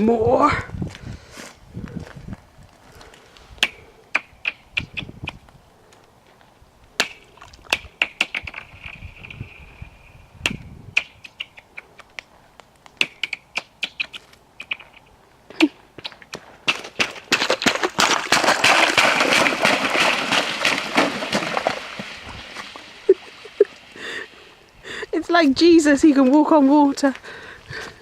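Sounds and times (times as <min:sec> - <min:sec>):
ice cracking and pinging underfoot: 0:16.0 - 0:24.2.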